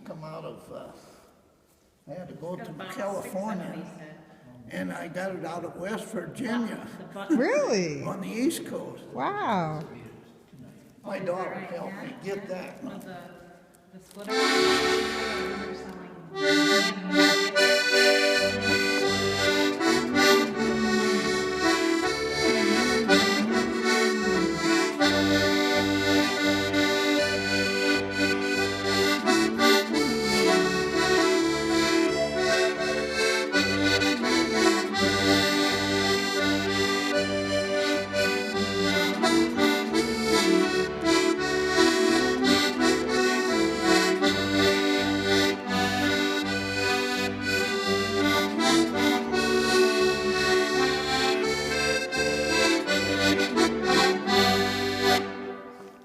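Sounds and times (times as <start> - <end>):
accordion playing lively tune: 14.2 - 56.0.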